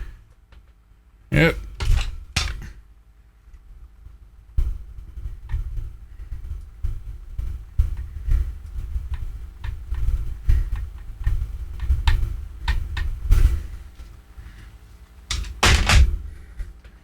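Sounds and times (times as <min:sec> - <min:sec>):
small handling clicks and knocks: 0:01.6 - 0:02.8, 0:07.8 - 0:14.2, 0:15.3 - 0:17.0.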